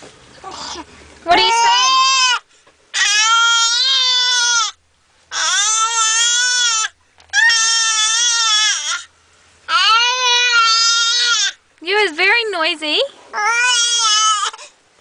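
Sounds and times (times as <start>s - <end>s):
baby wailing: 0.4s - 9.1s, 9.7s - 11.6s, 13.3s - 14.7s.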